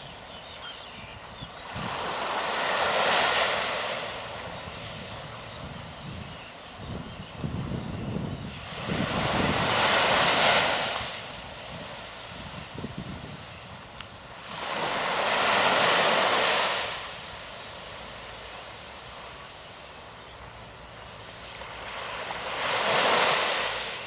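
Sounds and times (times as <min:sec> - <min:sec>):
steady surf wash: 0:00.0 - 0:24.0
wind buffeting microphone: 0:00.9 - 0:16.3
sea waves breaking: 0:01.6 - 0:05.6, 0:08.1 - 0:24.0.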